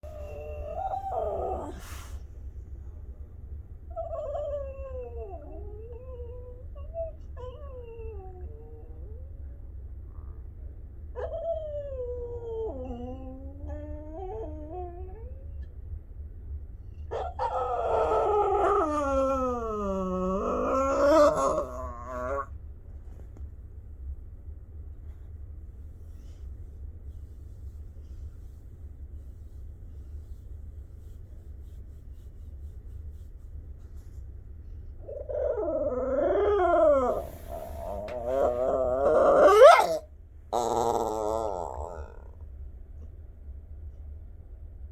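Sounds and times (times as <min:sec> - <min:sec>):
dog howling whines: 0:00.1 - 0:02.0, 0:03.9 - 0:09.3, 0:11.2 - 0:15.4, 0:17.1 - 0:22.5, 0:35.0 - 0:42.4
cat yowling: 0:17.1 - 0:22.5, 0:35.1 - 0:40.0, 0:40.6 - 0:42.3.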